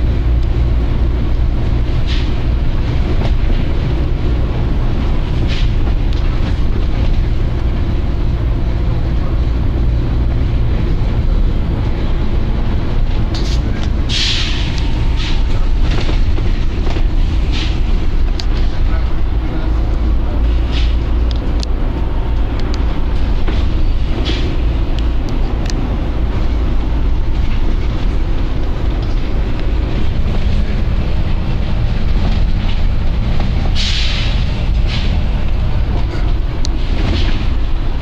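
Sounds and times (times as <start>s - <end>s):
diesel bus engine rumbling: 0.0s - 38.0s
air brake hiss: 14.1s - 15.4s, 33.8s - 35.1s.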